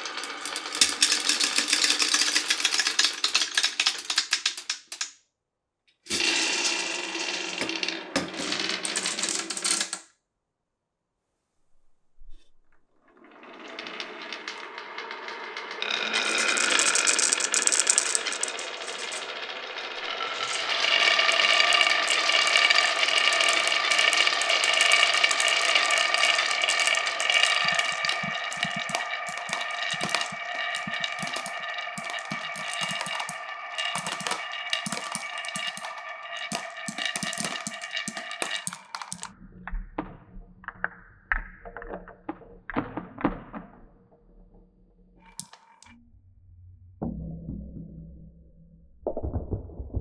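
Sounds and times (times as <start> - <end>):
marbles clacking on wood: 0.0 - 5.2, 6.1 - 10.1, 13.2 - 39.3, 45.3 - 45.9
marbles rolling on wooden run: 0.0 - 5.2, 6.1 - 10.1, 13.1 - 39.3, 45.3 - 45.9.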